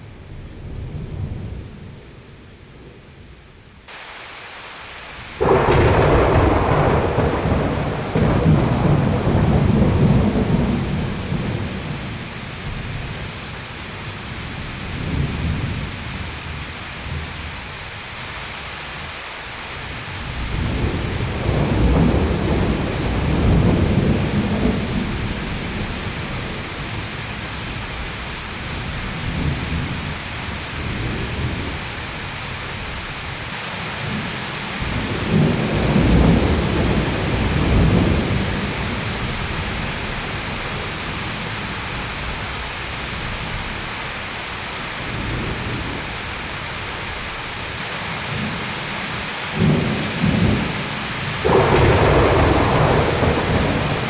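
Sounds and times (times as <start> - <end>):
heavy rain hissing: 3.8 - 54.0
thunder rumbling: 5.3 - 17.5, 20.2 - 33.1, 34.8 - 43.9, 49.6 - 54.0.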